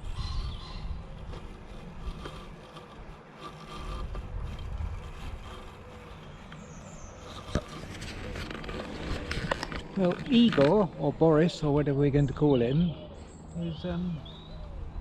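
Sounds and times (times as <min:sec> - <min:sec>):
wind rumble on microphone: 0:00.0 - 0:11.0, 0:14.3 - 0:15.0
distant robot lawn mower hum: 0:00.0 - 0:15.0.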